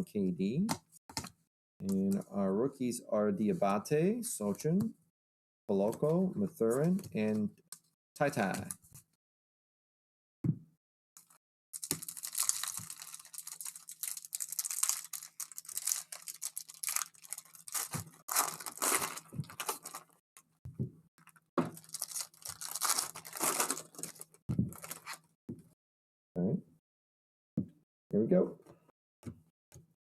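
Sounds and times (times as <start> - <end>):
foil wrapper crinkling: 11.8 - 20.2, 21.3 - 25.2
foil wrapper tearing: 11.8 - 20.2, 21.7 - 25.2.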